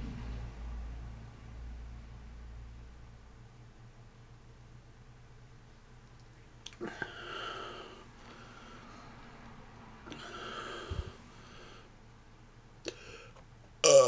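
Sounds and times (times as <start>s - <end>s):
man breathing noisily: 6.8s - 9.3s, 10.1s - 12.0s, 12.9s - 13.4s.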